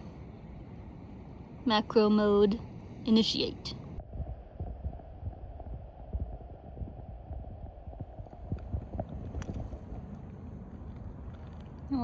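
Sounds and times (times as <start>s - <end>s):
outdoor background rumble: 0.0s - 12.0s
faint clicks: 8.2s - 11.9s.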